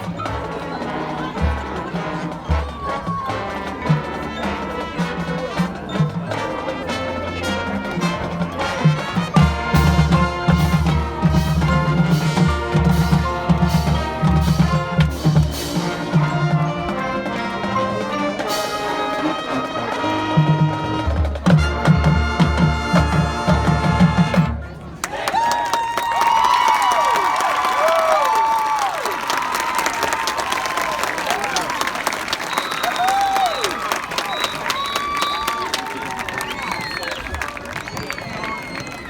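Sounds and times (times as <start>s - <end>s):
marching band playing: 0.0s - 25.4s, 26.1s - 39.0s
low drums: 7.6s - 19.2s, 19.9s - 24.8s.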